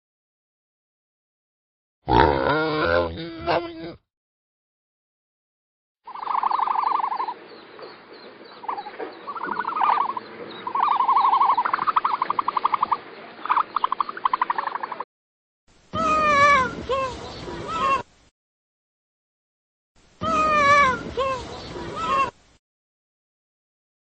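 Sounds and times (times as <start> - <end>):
animal calling in pulsed trills: 6.1 - 7.4, 8.6 - 14.8.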